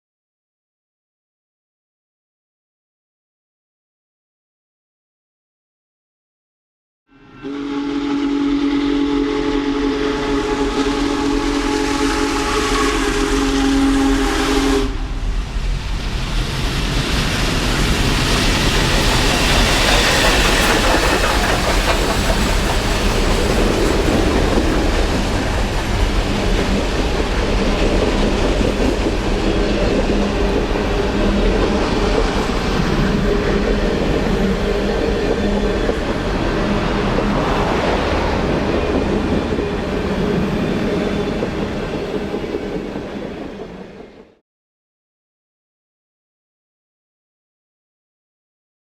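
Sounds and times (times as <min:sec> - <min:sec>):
steam whistle chord: 0:07.1 - 0:15.3
steam locomotive rumble: 0:07.2 - 0:44.4.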